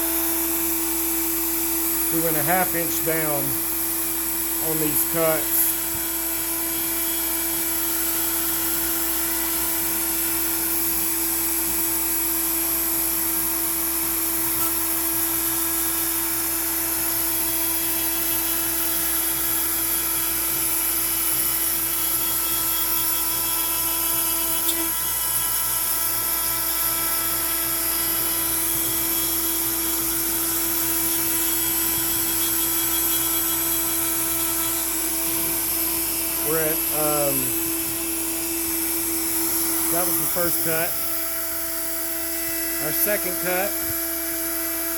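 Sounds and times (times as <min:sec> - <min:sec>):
router high-pitched whine: 0:00.0 - 0:44.9
hiss of cutting wood: 0:34.9 - 0:41.1, 0:42.3 - 0:44.1.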